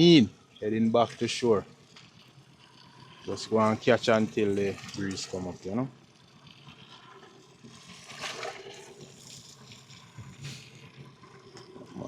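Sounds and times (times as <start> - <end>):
water lapping against boat hull: 6.4 - 11.0.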